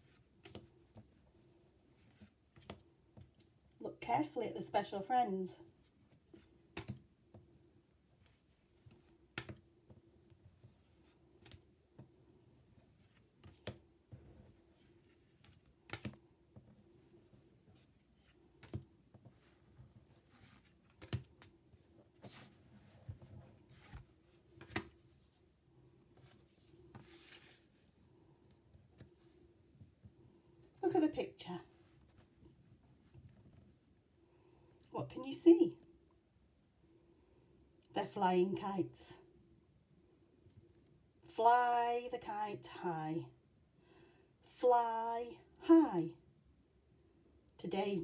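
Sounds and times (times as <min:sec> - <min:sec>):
soft rustle: 0:00.0 - 0:03.8, 0:05.6 - 0:30.7, 0:31.6 - 0:34.8.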